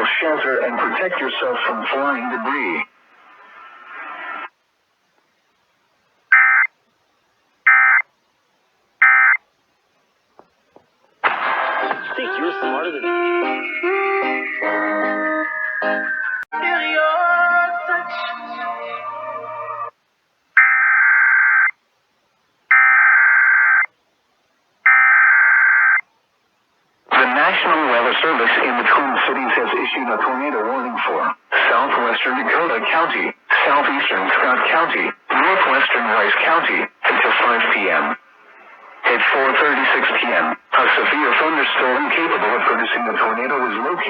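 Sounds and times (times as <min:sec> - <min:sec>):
harsh digital data tones: 0:06.3 - 0:06.7, 0:07.7 - 0:08.0, 0:09.0 - 0:09.4, 0:11.2 - 0:16.5.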